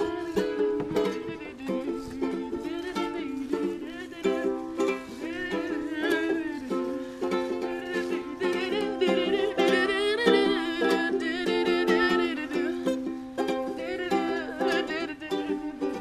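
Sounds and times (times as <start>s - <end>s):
ukulele strummed in chords: 0.0s - 16.0s.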